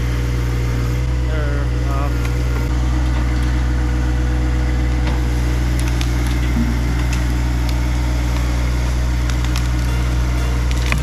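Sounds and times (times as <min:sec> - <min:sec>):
tractor diesel engine running: 0:00.0 - 0:11.0.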